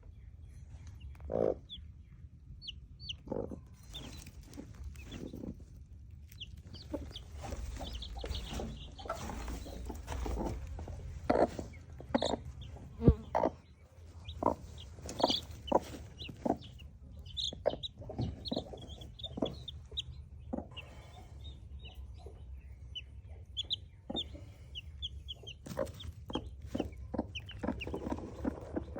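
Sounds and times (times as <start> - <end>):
chicks peeping: 0.1 - 28.9
hen clucking: 1.0 - 1.9, 2.6 - 28.9.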